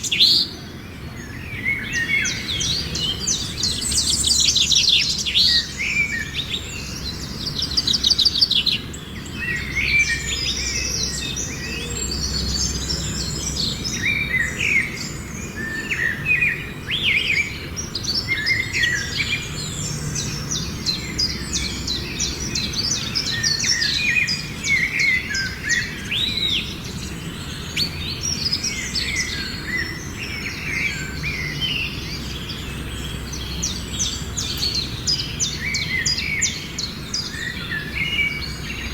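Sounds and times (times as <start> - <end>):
birds chirping and singing: 0.0 - 38.9.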